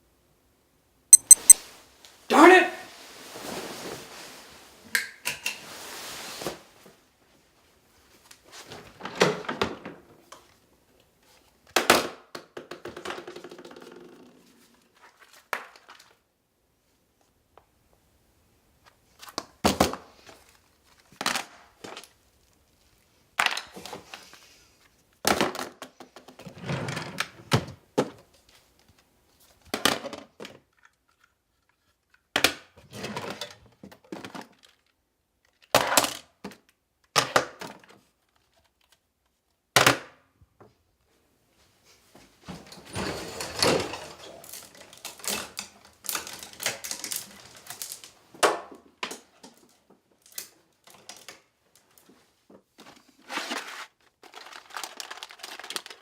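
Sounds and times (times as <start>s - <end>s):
objects thudding and clattering: 42.4s - 47.7s.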